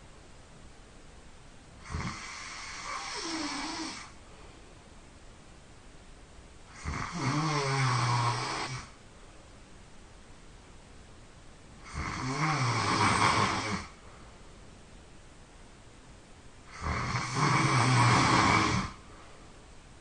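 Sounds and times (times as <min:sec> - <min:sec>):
person snoring loudly: 0:01.8 - 0:04.2, 0:06.7 - 0:09.0, 0:11.8 - 0:14.0, 0:16.7 - 0:19.0.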